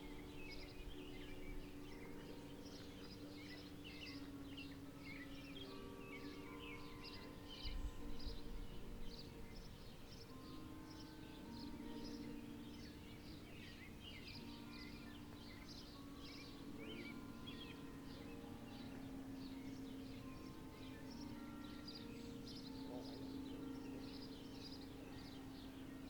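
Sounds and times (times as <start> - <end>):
birds chirping: 0.0 - 26.0
wind buffeting microphone: 6.4 - 21.4.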